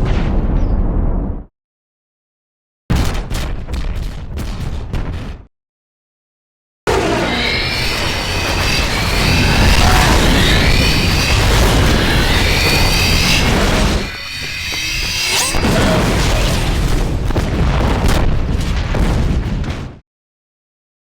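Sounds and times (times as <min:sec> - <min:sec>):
high rising tones: 0:06.9 - 0:16.0
deep rumbling booms: 0:07.7 - 0:20.0.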